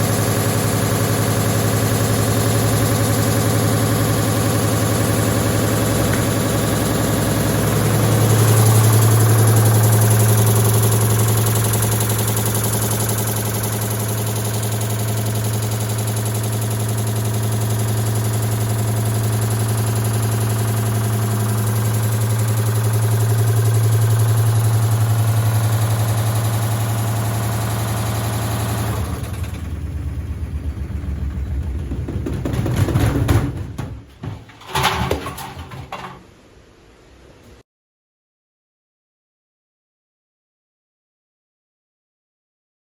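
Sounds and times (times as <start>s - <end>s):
washing machine spin hum: 0.0s - 37.6s
stone rattling in drum: 31.6s - 36.3s.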